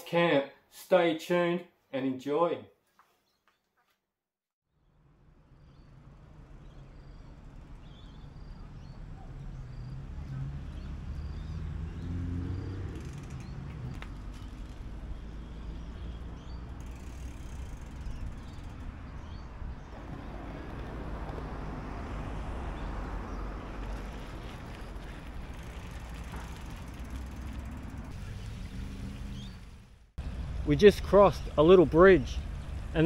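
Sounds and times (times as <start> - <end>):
bicycle tyre noise: 5.9 - 31.7
wind rumbling on microphone: 17.8 - 29.8.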